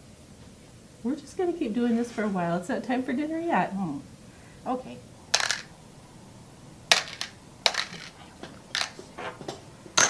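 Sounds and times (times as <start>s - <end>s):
nuts and bolts clinking: 5.3s - 5.8s, 6.9s - 9.0s.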